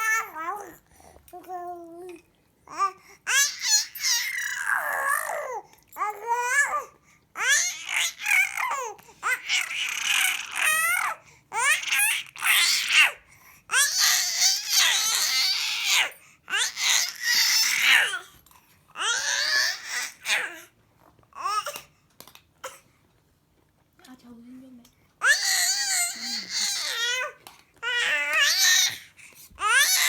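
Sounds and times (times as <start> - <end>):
small child babbling and squealing: 1.4 - 18.2, 25.2 - 30.0.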